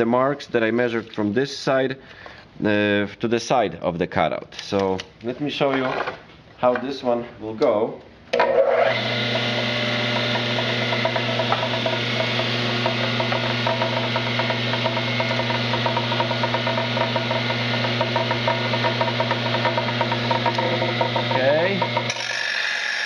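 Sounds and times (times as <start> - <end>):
electric tile cutter running: 8.4 - 23.0.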